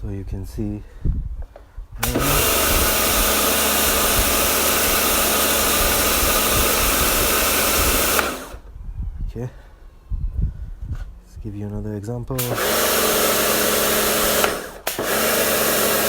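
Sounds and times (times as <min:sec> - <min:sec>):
pressure washer motor and pump: 0:02.0 - 0:08.6, 0:12.4 - 0:16.0.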